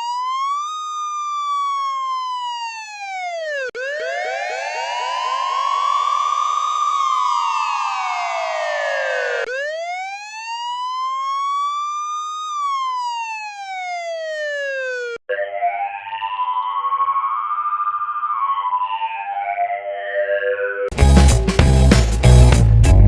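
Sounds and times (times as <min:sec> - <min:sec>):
electronic wailing siren: 0:00.0 - 0:21.0.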